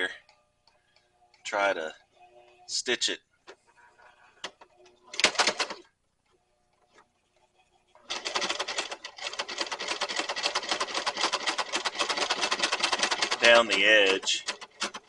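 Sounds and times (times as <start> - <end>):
sewing machine stitching: 4.4 - 5.9, 8.0 - 15.0.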